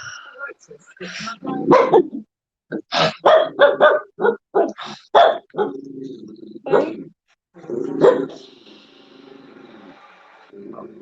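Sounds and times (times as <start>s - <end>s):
dog barking: 1.6s - 2.1s, 3.0s - 5.8s, 6.7s - 7.0s, 8.0s - 8.4s.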